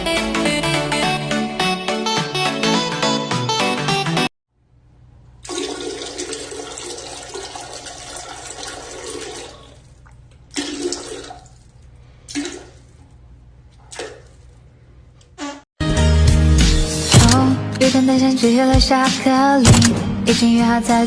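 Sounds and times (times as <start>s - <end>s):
short spurts of water: 5.4s - 14.7s.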